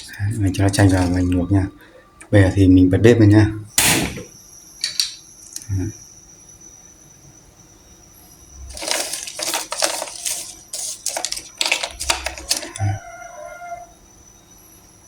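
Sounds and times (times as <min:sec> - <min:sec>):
kitchenware clattering: 0:00.0 - 0:01.4.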